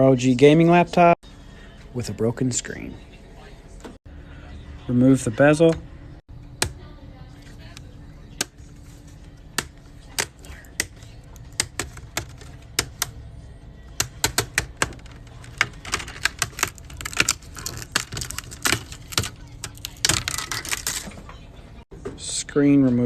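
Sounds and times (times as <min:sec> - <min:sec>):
plastic clips clicking and snapping: 0:14.0 - 0:21.1.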